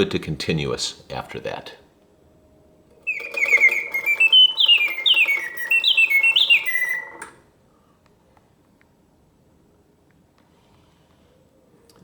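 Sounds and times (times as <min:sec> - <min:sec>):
mechanical bird whistled chirps: 0:03.1 - 0:07.4.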